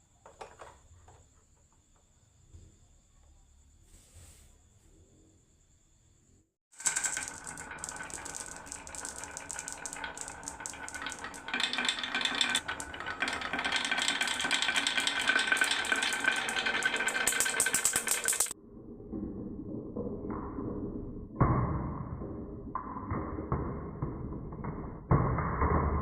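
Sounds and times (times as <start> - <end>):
marbles clattering down wooden run: 6.7 - 18.6.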